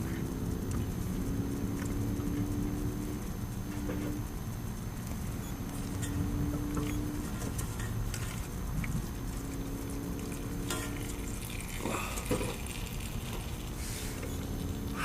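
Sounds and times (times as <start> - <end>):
steady low rumble: 0.0 - 15.0
oil pouring and trickling: 6.8 - 15.0.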